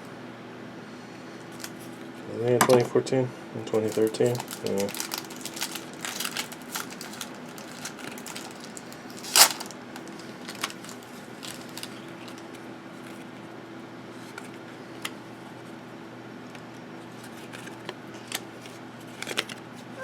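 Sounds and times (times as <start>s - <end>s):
faint steady hum: 0.0s - 20.0s
foil wrappers rustling: 3.7s - 13.3s.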